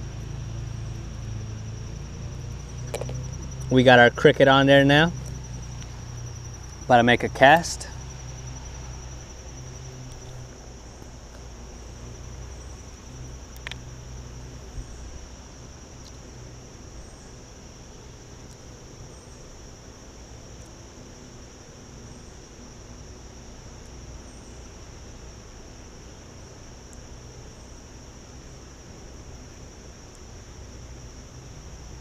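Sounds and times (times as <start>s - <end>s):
insects trilling: 0.0s - 32.0s
small clicks: 13.5s - 13.8s.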